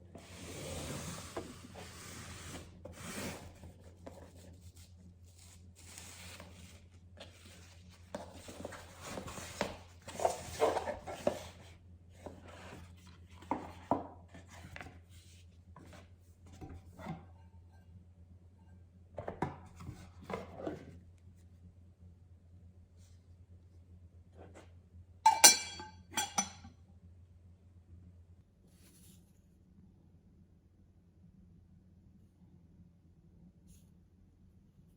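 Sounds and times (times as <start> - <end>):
rubbing and rustling handling: 1.3 - 16.6.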